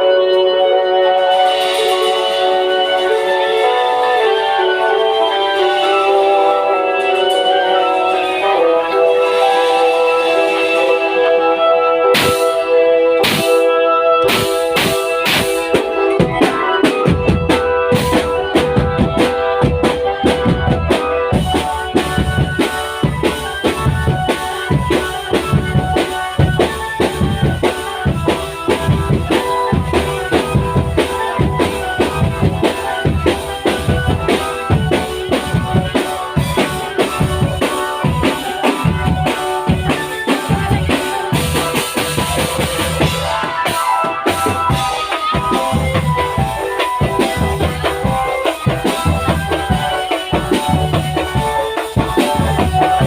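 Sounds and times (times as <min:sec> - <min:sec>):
live band music: 0:00.0 - 0:53.0.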